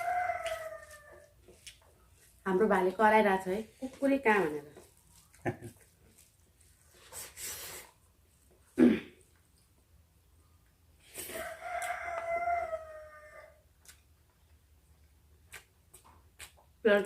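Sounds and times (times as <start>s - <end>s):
rooster crowing: 0.0s - 1.4s, 11.3s - 13.6s.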